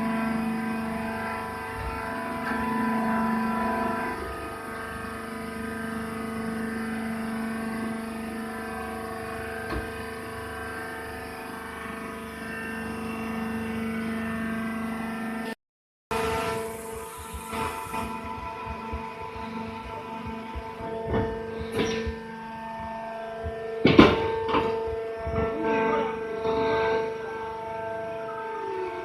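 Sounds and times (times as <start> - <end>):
baler motor humming: 16.1 - 29.0.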